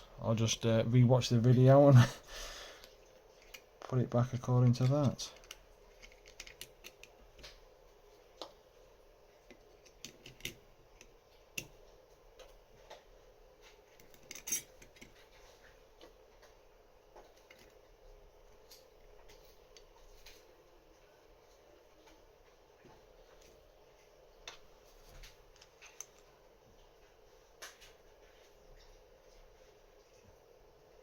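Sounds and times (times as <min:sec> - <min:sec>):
small metal parts clicking: 0:04.7 - 0:07.1, 0:14.0 - 0:15.2.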